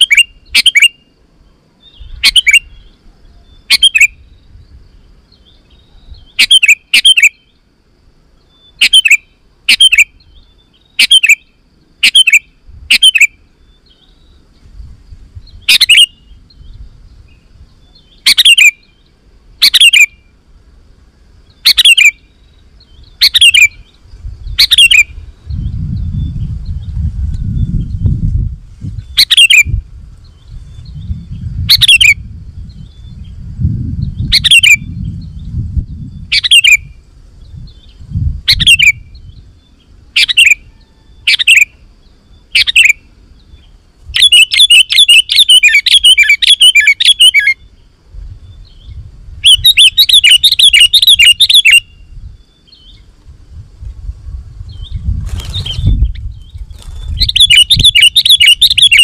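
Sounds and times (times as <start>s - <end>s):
bulbul calling: 0.0s - 1.1s, 1.8s - 4.3s, 5.4s - 7.6s, 8.5s - 14.3s, 15.5s - 16.7s, 17.3s - 20.3s, 21.5s - 25.7s, 29.0s - 29.8s, 31.0s - 32.2s, 34.2s - 35.0s, 36.2s - 37.0s, 37.8s - 39.4s, 40.2s - 47.7s, 48.7s - 53.0s, 54.8s - 59.0s.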